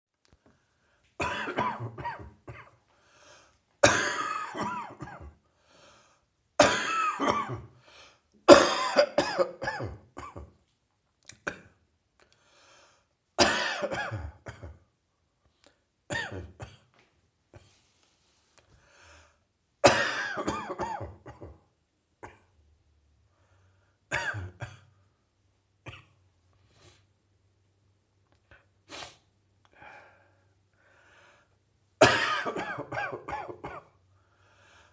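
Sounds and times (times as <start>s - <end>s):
person coughing: 1.2s - 2.8s, 3.8s - 5.4s, 6.6s - 7.8s, 8.5s - 10.6s, 13.4s - 14.9s, 16.1s - 16.9s, 19.8s - 22.5s, 24.1s - 25.0s, 32.0s - 34.0s.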